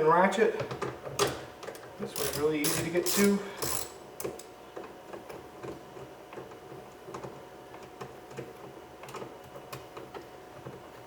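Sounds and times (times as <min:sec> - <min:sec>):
ratchet clicking: 0:02.2 - 0:04.0.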